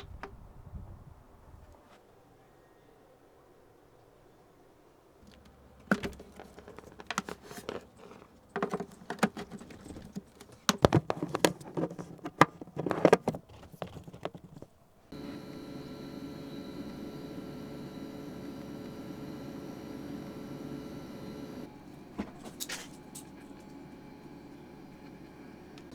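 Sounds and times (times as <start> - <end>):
machine hum with high whine: 15.1 - 25.9.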